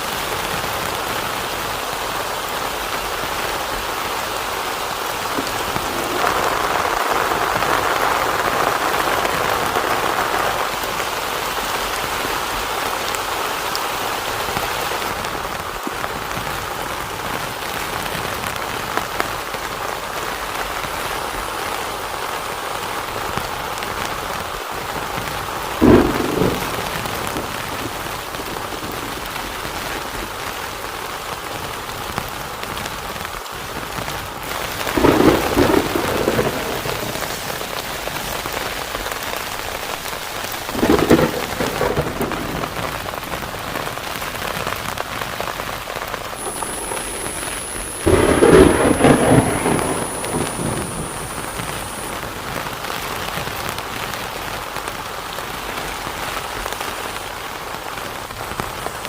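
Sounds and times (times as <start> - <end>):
heavy rain on a tent: 0.0 - 59.0
thunder clap: 4.8 - 12.2, 25.1 - 30.4, 34.6 - 54.1.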